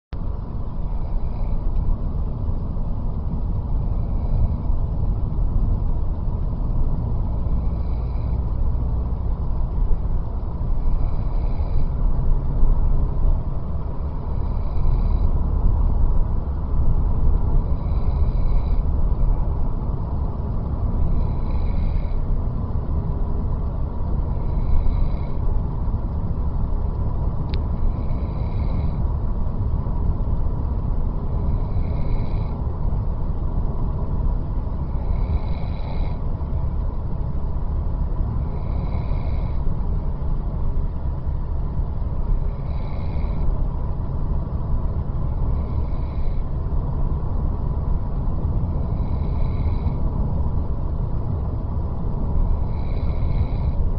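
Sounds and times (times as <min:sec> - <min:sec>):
steady low rumble: 0:00.1 - 0:53.9
person snoring: 0:10.8 - 0:11.9, 0:14.2 - 0:15.4, 0:17.6 - 0:18.9, 0:21.0 - 0:22.2, 0:24.3 - 0:25.4, 0:27.8 - 0:29.0, 0:31.4 - 0:32.6, 0:34.9 - 0:36.2, 0:38.4 - 0:39.6, 0:42.4 - 0:43.5, 0:45.5 - 0:46.4, 0:48.7 - 0:50.0, 0:52.5 - 0:53.8.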